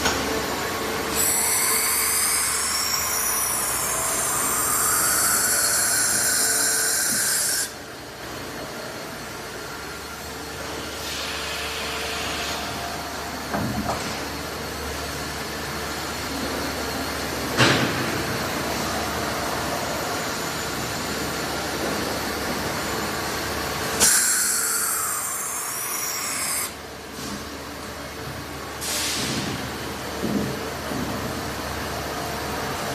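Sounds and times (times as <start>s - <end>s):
steady machine hum: 0.0s - 32.9s
machine cutting metal screeching: 1.1s - 7.8s, 24.0s - 26.8s.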